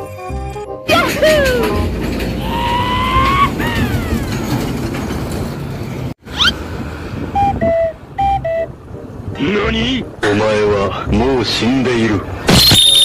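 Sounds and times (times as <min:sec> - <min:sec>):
low vehicle rumble: 0:00.9 - 0:12.5
rising chirp: 0:06.3 - 0:06.6, 0:07.3 - 0:08.8
whistle-like tones: 0:06.3 - 0:06.6, 0:07.3 - 0:08.7, 0:12.5 - 0:13.0
two-note beeps: 0:07.4 - 0:08.7.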